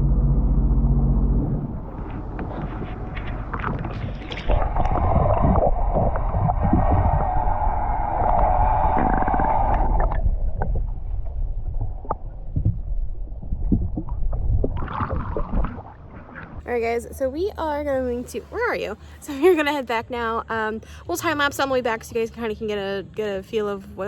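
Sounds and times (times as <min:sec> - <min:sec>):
jet ski engine whine: 0:00.0 - 0:04.4
water splashing around hull: 0:00.0 - 0:16.7.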